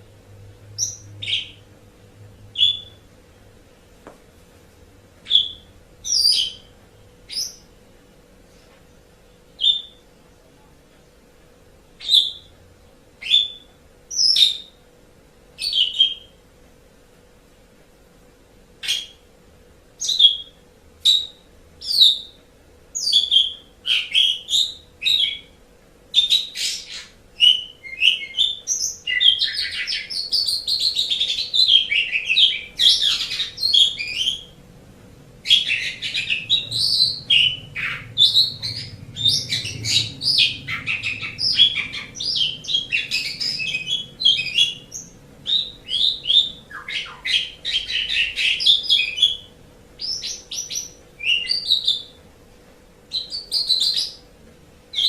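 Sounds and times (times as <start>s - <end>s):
starling singing: 0.7s - 1.7s, 2.4s - 3.1s, 5.2s - 7.7s, 9.6s - 10.0s, 23.0s - 34.6s, 35.4s - 52.2s.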